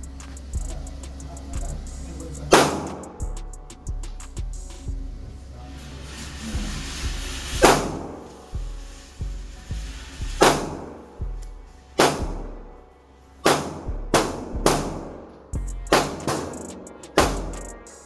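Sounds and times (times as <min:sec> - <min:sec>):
background music with kick drum: 0:00.0 - 0:05.5, 0:06.5 - 0:18.0.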